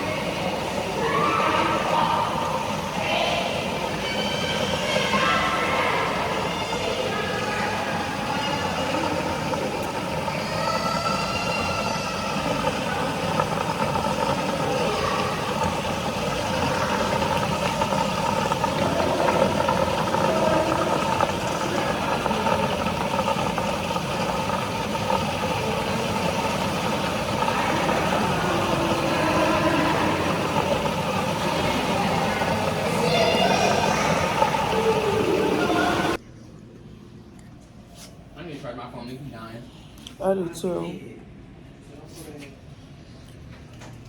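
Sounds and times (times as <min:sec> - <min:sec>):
vehicle running: 0:02.8 - 0:36.2.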